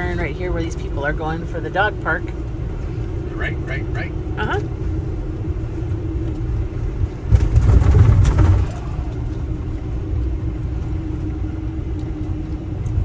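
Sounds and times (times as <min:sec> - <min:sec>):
engine and road noise rumble: 0:00.0 - 0:13.0
rushing noise: 0:02.9 - 0:11.3.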